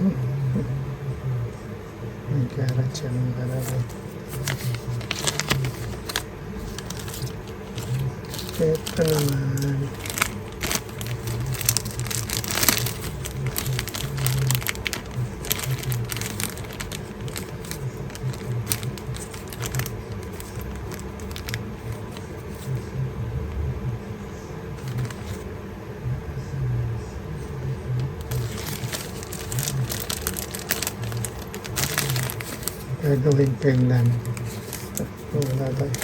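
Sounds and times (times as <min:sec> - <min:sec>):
light crinkling: 0:03.5 - 0:22.9, 0:24.8 - 0:25.5, 0:27.4 - 0:36.0.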